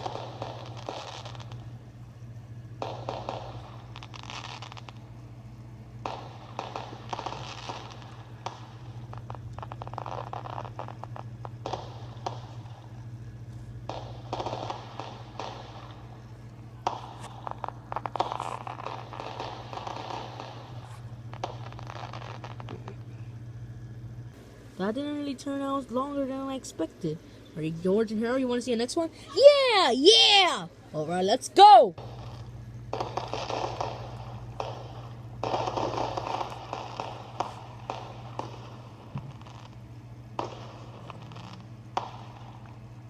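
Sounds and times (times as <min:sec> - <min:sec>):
firework crackling and popping: 0:00.0 - 0:26.3, 0:31.6 - 0:43.0
steady low hum: 0:00.0 - 0:43.0.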